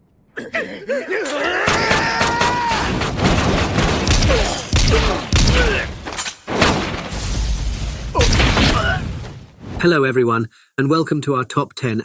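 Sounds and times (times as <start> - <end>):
drawn-out shout: 1.2 - 3.0
impacts thuds and booms: 1.7 - 9.8.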